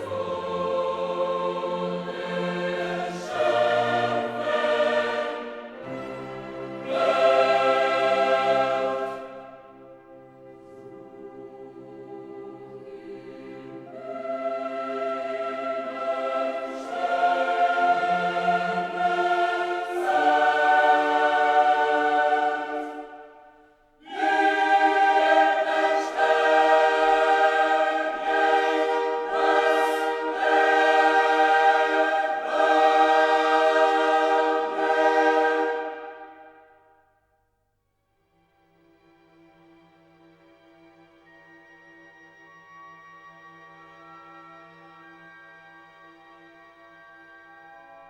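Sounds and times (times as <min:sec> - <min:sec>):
choral singing in held chords: 0:00.0 - 0:37.1.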